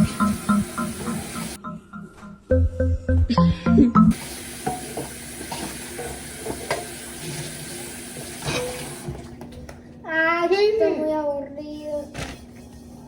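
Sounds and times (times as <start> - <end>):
food sizzling in a pan: 0.0 - 1.6, 4.2 - 9.1
music: 0.0 - 4.2.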